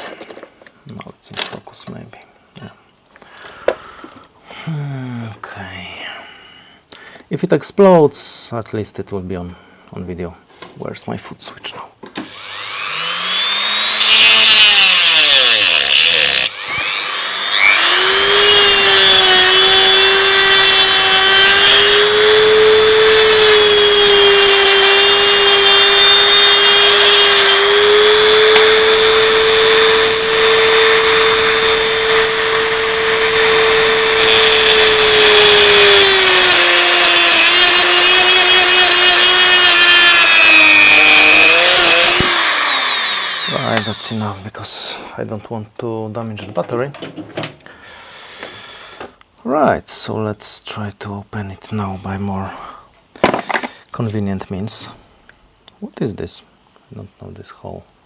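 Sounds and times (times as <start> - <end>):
rotary tool cutting plastic: 12.2 - 44.2.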